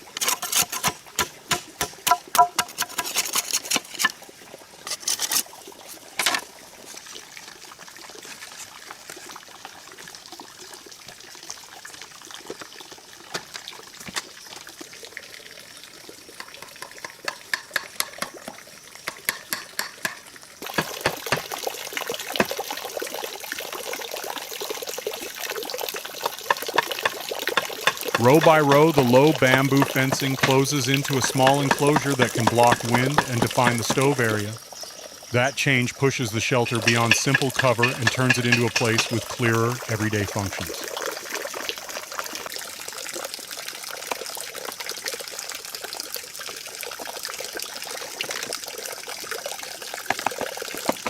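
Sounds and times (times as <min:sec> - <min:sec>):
bamboo pieces knocking: 0:00.2 - 0:04.1, 0:26.5 - 0:34.2, 0:36.8 - 0:39.4, 0:50.1 - 0:51.0.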